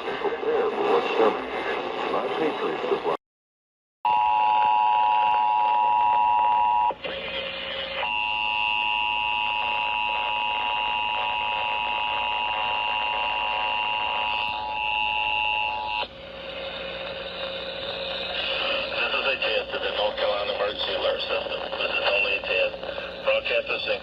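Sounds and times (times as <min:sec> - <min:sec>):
harsh dual-tone beep: 0:04.1 - 0:06.9.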